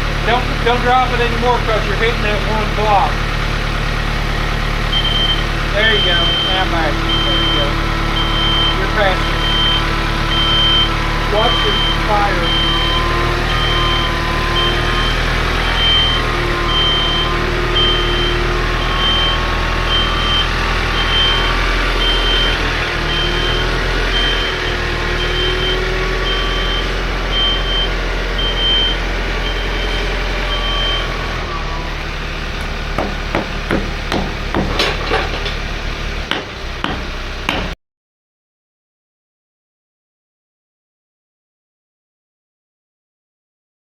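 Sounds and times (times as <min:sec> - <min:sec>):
heavy machine engine running: 0:00.0 - 0:37.8
reversing alarm beeping: 0:04.8 - 0:34.7
sharp knocks and clicks: 0:32.6 - 0:35.6, 0:36.3 - 0:37.8.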